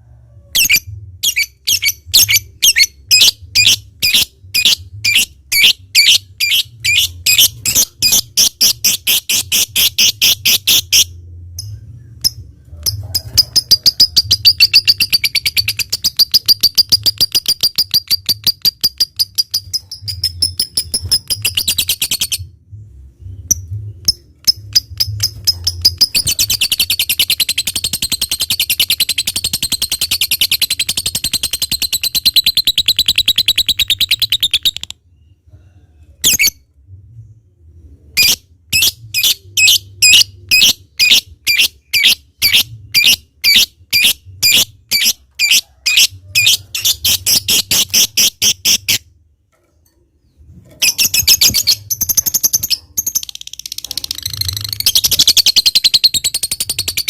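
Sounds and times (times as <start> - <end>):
lovebird chattering trill: 24.0 - 34.9, 38.2 - 49.0, 50.8 - 57.0.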